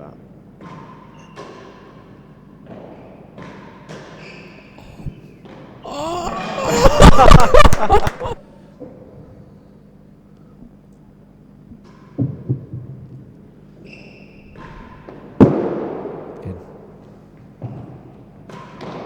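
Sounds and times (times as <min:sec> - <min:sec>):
crowd cheering and clapping: 0:05.9 - 0:08.4.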